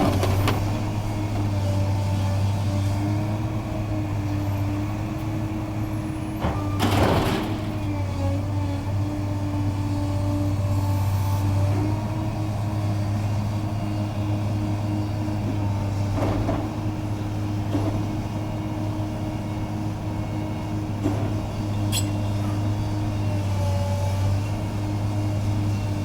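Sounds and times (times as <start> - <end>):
diesel engine running: 0.0 - 11.2
high squeak: 21.9 - 22.3.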